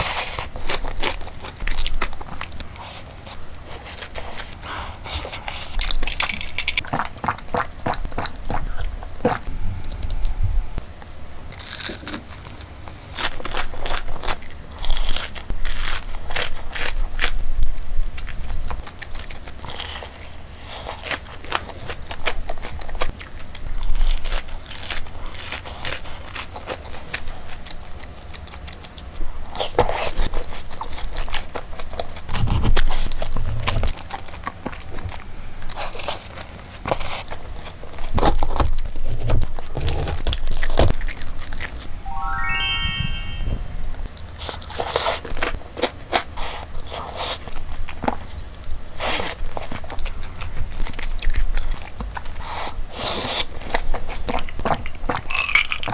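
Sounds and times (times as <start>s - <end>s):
crunching of fried food being chewed: 0.0s - 10.2s, 11.0s - 41.9s, 44.3s - 55.9s
quiet chewing: 0.0s - 10.3s, 18.1s - 41.9s.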